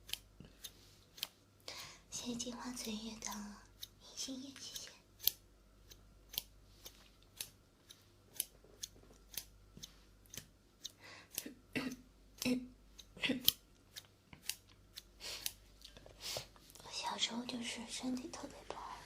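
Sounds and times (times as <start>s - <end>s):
scissors snipping: 0.0s - 1.4s, 2.7s - 7.6s, 8.3s - 16.0s.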